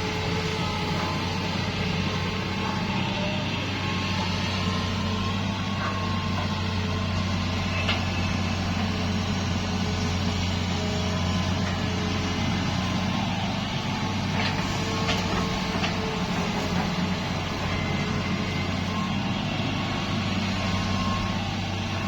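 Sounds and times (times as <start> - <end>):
heavy diesel engine running: 0.0 - 22.0.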